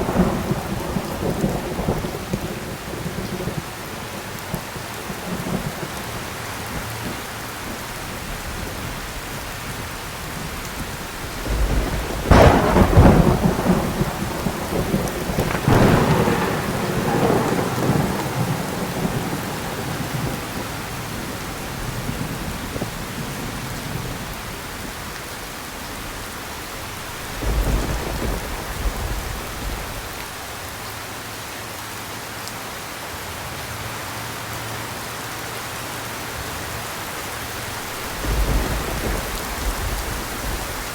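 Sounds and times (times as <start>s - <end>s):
thunder rumbling: 0.0s - 7.2s, 8.3s - 25.1s, 25.8s - 30.3s, 37.4s - 40.9s
heavy rain: 0.0s - 40.9s.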